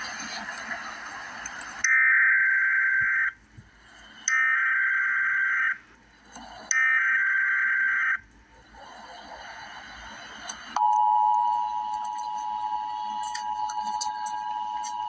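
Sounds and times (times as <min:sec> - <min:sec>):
two-tone alarm tone: 0:10.8 - 0:15.0.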